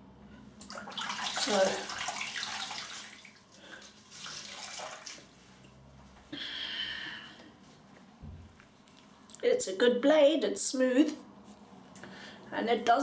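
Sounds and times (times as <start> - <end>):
tap water running into sink: 0.6 - 5.3.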